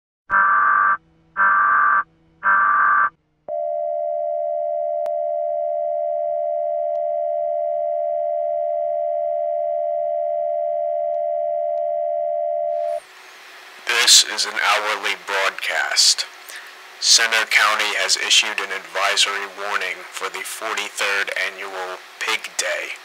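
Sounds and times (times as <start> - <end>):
harsh electronic buzzes: 0.3 - 3.2.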